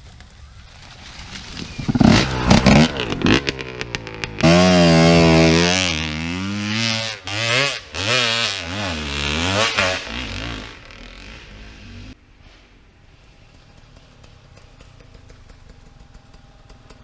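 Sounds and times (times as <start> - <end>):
motorcycle engine revving: 1.6 - 12.2.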